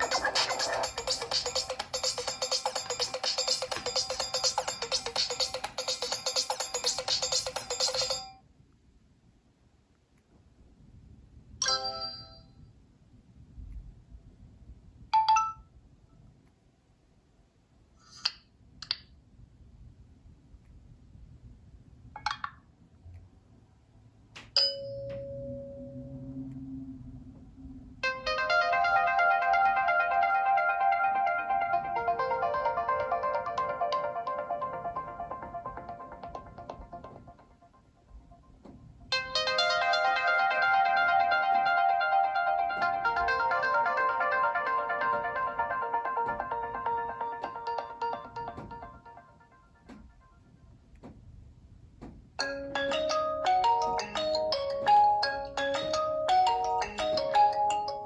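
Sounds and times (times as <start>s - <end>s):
phone ringtone notes: 0.0s - 8.4s, 28.0s - 37.4s, 39.2s - 49.6s, 52.4s - 58.0s.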